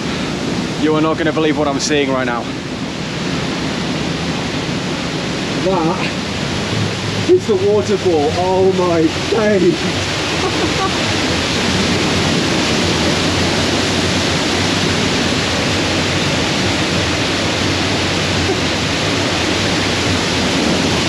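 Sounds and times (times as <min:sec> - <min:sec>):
waterfall crashing: 0:00.0 - 0:21.0.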